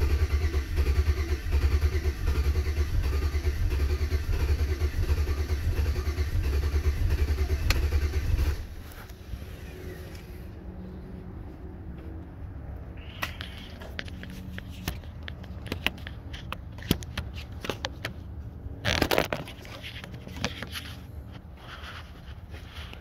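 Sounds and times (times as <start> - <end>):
scraping rustle: 18.8 - 23.0.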